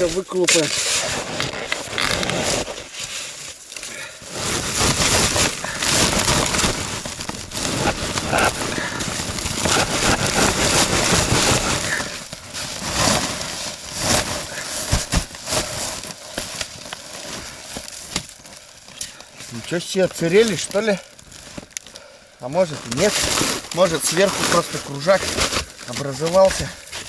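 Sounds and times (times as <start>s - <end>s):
snow and ice crunching: 0.0s - 27.0s
wood knocking and scraping: 4.9s - 12.4s.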